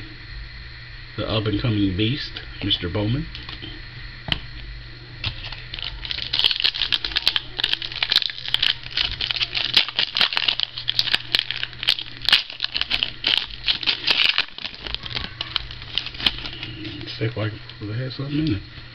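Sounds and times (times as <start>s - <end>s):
card pack wrapper crinkling: 5.2s - 17.8s.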